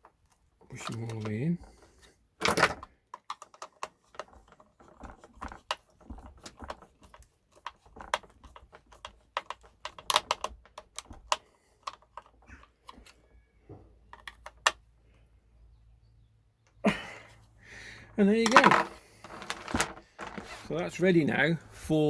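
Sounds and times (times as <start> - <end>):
small clicks and rattles of handling: 0.0 - 15.2, 18.4 - 20.7.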